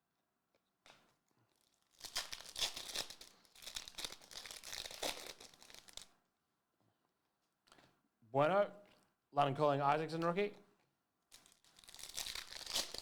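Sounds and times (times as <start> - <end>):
foil wrapper tearing and crinkling: 1.5 - 6.1, 11.3 - 13.0.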